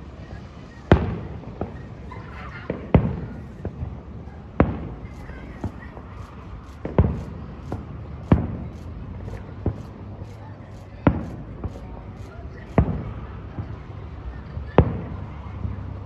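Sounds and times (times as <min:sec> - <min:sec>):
firework booms: 0:02.7 - 0:08.6.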